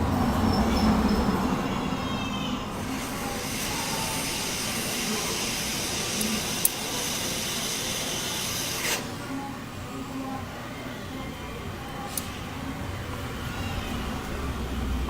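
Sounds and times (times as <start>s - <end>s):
hot air blower hissing: 2.7s - 9.4s.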